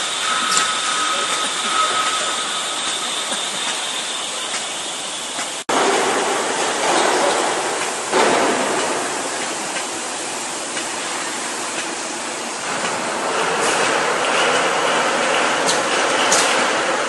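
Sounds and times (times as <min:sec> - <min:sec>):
faint high whine: 0:00.0 - 0:05.3
grinding machine hiss: 0:00.0 - 0:17.0.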